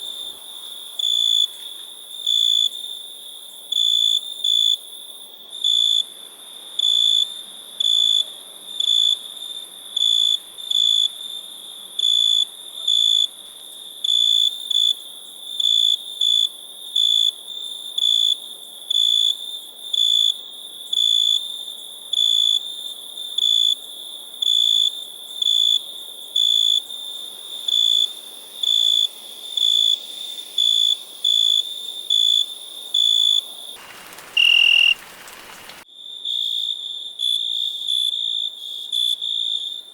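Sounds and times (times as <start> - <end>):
constant high hiss: 0.0 - 3.7, 20.3 - 35.9
cricket chirping: 0.0 - 6.0, 14.1 - 39.9.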